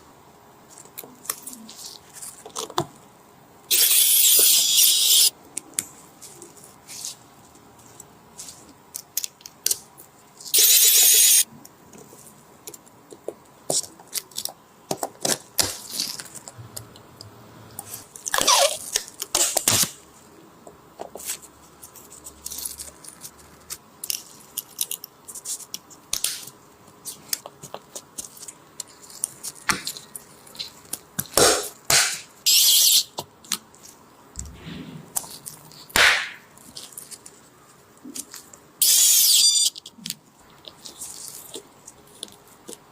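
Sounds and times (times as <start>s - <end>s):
loud scratchy bursts: 10.5s - 11.5s.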